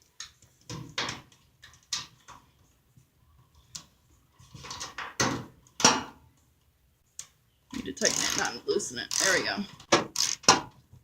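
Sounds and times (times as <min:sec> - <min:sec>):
ratchet wrench clicking: 0:10.2 - 0:10.5.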